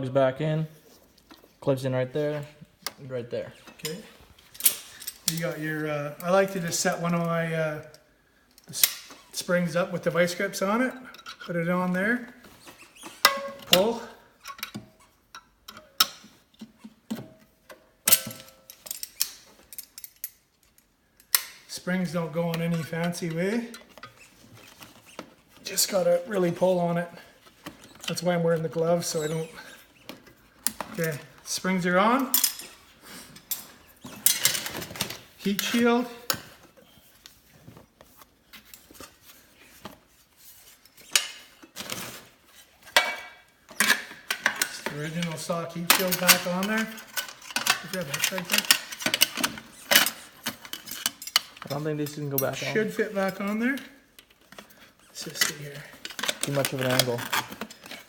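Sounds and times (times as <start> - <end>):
sheet metal clinking and rattling: 13.0 - 14.8
metal clanks: 13.2 - 14.8.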